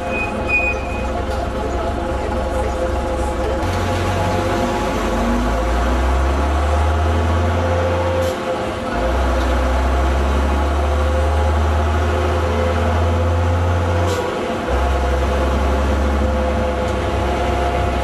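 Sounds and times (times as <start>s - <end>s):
bus engine pulling: 0.0s - 18.0s.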